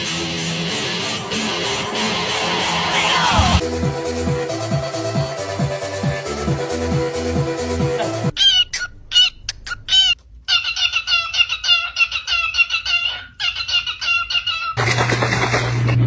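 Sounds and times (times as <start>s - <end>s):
parrot squawking: 8.3s - 14.8s.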